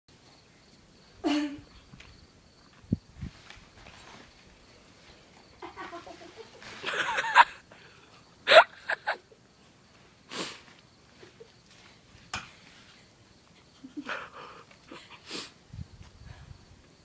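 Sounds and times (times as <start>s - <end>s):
person coughing: 1.2s - 1.6s.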